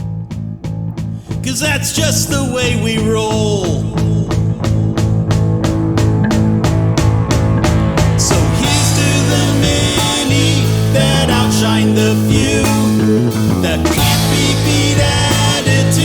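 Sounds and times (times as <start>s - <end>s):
instrumental rock music with guitar: 0.0s - 16.0s.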